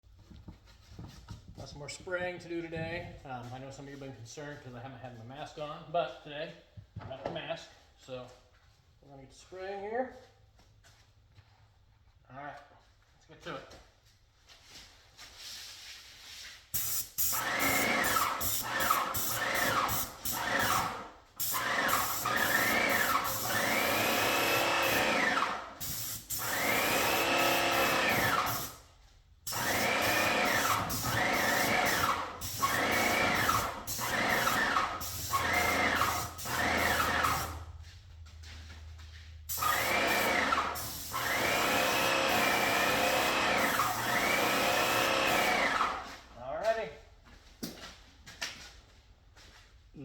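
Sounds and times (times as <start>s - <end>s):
paint sprayer hissing and whining: 16.8s - 28.8s, 29.5s - 37.8s, 39.5s - 46.3s.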